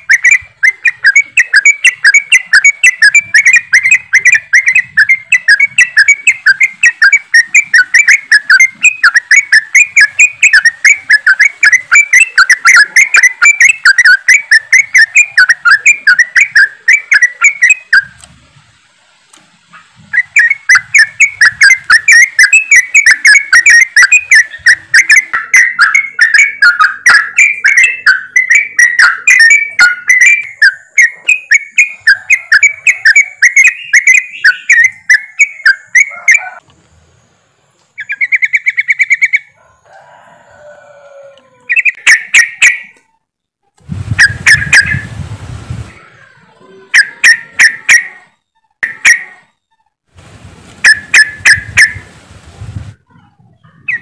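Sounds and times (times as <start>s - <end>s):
birds chattering: 0.0s - 18.3s, 19.7s - 36.6s, 37.2s - 39.6s, 41.7s - 43.2s, 44.2s - 45.1s, 45.7s - 49.6s, 53.1s - 54.0s
noisy rustle: 17.7s - 22.7s, 36.6s - 38.0s, 43.8s - 46.9s, 50.0s - 53.9s.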